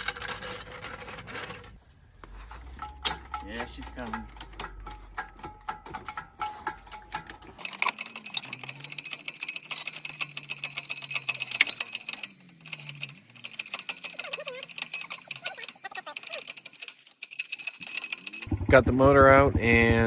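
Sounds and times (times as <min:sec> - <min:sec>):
hoist mechanical clicks: 0:02.7 - 0:18.5.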